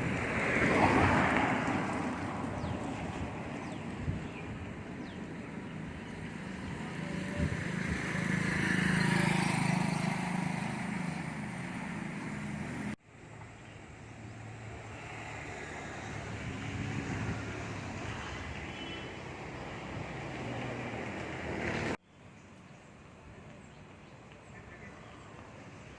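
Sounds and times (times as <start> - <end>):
vehicle passing by: 0.0 - 4.4, 5.6 - 13.0, 14.1 - 22.0.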